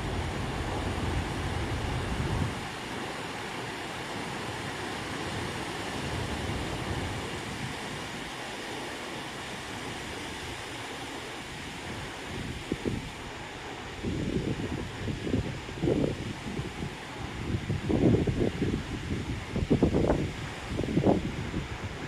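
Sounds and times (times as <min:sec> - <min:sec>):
wind buffeting microphone: 0:00.0 - 0:02.9, 0:11.9 - 0:22.0.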